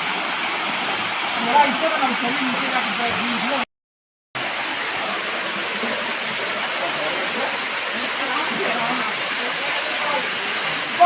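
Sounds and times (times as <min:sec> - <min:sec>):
waterfall rushing: 0:00.0 - 0:03.6, 0:04.4 - 0:11.0.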